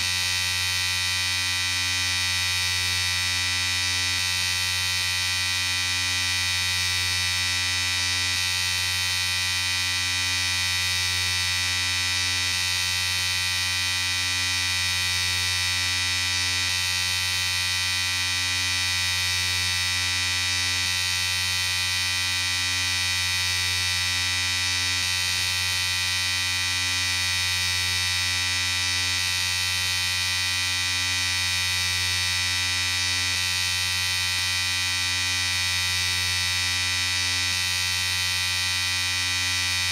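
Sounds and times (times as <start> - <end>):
electric shaver buzzing: 0.0 - 39.9.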